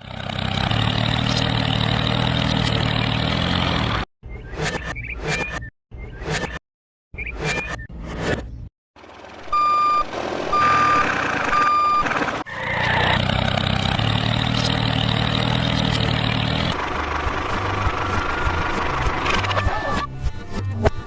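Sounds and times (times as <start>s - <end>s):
heavy vehicle engine running: 0.0s - 4.1s, 9.0s - 12.5s, 13.2s - 20.0s
truck reversing alarm beeping: 9.4s - 12.4s.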